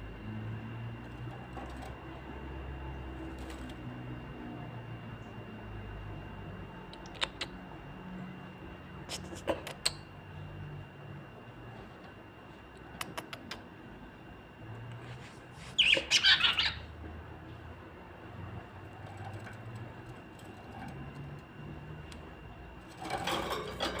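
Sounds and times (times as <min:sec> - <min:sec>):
parrots calling: 0:15.7 - 0:16.9
parrots squawking loudly: 0:15.8 - 0:16.8.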